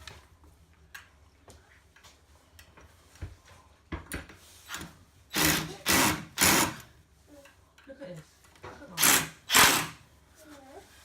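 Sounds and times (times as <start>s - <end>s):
power drill driving a screw: 5.3s - 6.9s, 9.0s - 10.0s.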